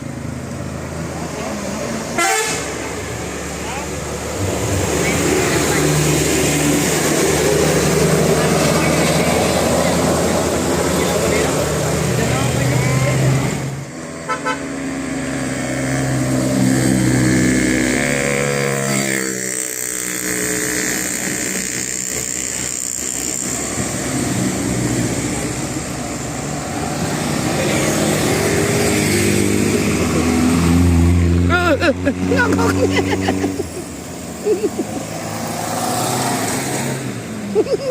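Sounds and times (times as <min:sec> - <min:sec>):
bus engines running: 0:00.0 - 0:37.9
road traffic: 0:00.0 - 0:37.9
multi-tone bus horn: 0:02.1 - 0:02.9, 0:14.2 - 0:14.8.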